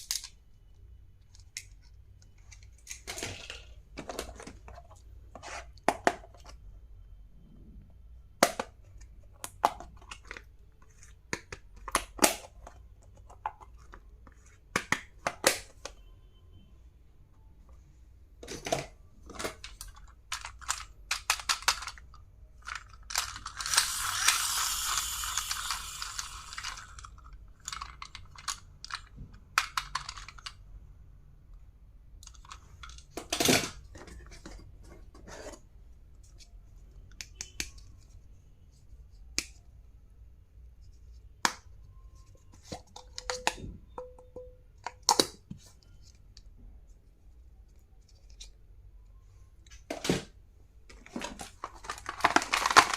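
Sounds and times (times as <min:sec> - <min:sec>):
small plastic items clicking: 0:19.3 - 0:30.6, 0:51.1 - 0:52.9
packaging rustling: 0:51.0 - 0:52.9.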